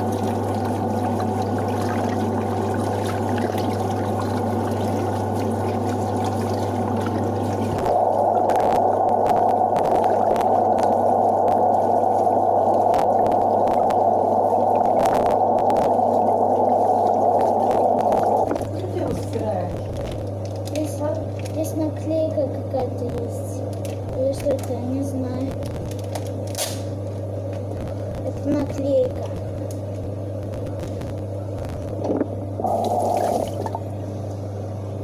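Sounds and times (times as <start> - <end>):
tap water running into sink: 32.0 - 33.8.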